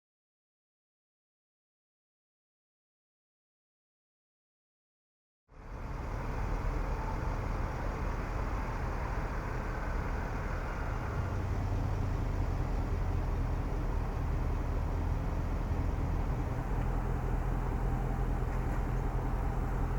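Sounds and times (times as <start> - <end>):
car engine rumbling: 5.6 - 19.9.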